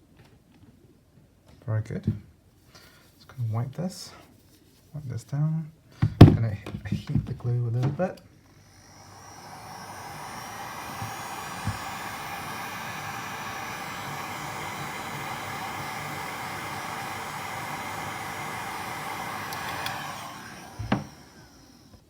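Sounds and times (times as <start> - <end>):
hot-air blower running: 8.5 - 22.0.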